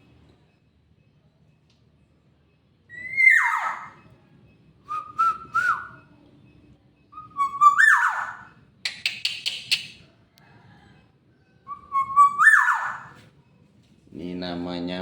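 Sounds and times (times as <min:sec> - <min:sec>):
harsh raspy bird notes: 0:02.9 - 0:04.0, 0:07.2 - 0:09.8, 0:11.7 - 0:13.2
oriole whistled calls: 0:02.9 - 0:04.0, 0:07.2 - 0:10.0, 0:11.7 - 0:13.2.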